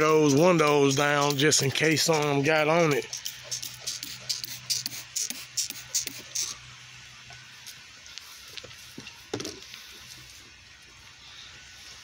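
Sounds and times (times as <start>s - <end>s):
pressure washer spraying: 0.0s - 6.6s.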